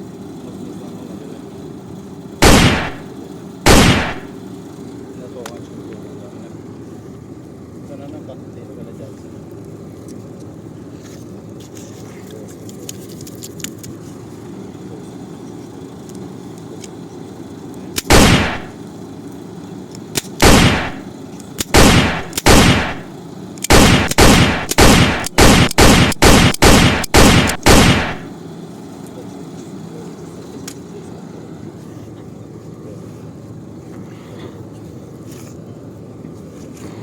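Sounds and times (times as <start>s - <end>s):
steady low hum: 0.0s - 7.8s, 13.9s - 36.7s
toy gun shots with falling swish: 2.4s - 3.1s, 3.7s - 4.4s, 18.0s - 18.8s, 20.2s - 28.3s.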